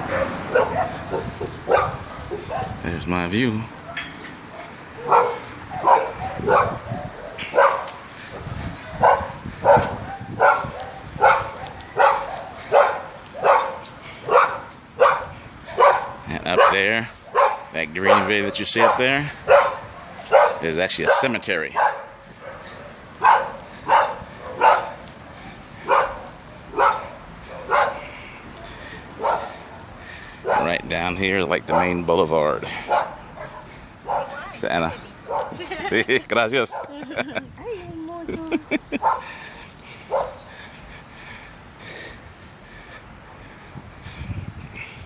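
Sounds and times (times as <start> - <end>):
dog barking: 0.0 - 2.8, 3.8 - 25.0, 25.8 - 28.0, 29.2 - 29.6, 30.4 - 30.8, 31.7 - 32.0, 32.9 - 34.6, 35.2 - 35.6, 39.0 - 39.3, 40.1 - 40.4.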